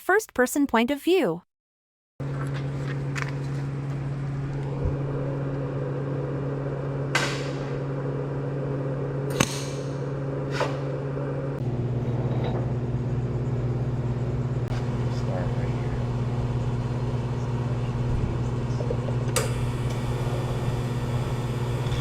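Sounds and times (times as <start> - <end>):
welding machine humming: 18.8 - 22.0.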